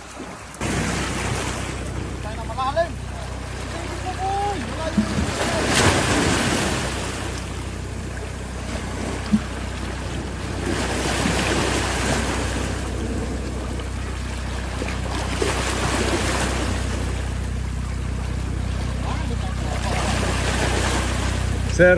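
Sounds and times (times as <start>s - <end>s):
steady low hum: 0.0s - 21.9s
water sloshing and splashing: 0.0s - 21.9s.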